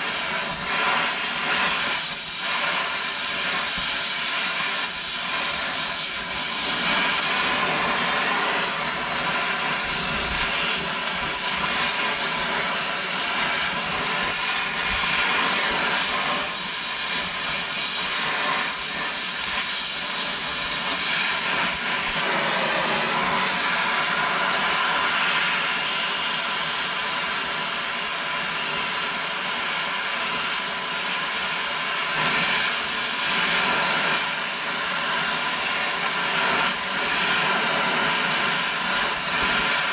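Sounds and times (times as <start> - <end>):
pneumatic grinder air hiss: 0.0 - 39.9.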